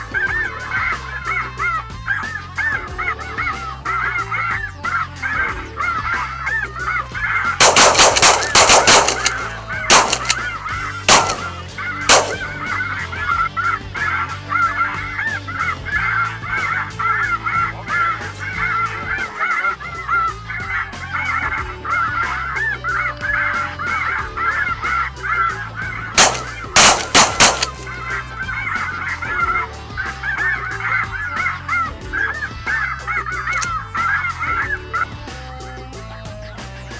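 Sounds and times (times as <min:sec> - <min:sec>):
flock of geese calling: 0:02.1 - 0:35.0
shotgun shots: 0:07.6 - 0:12.6, 0:26.2 - 0:27.9.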